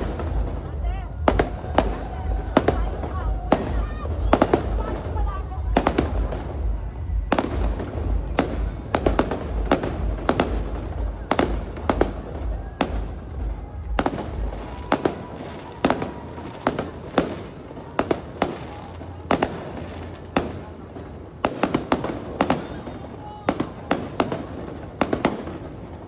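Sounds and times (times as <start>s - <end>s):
low rumble: 0.0s - 16.3s
fireworks bursting: 0.0s - 26.0s.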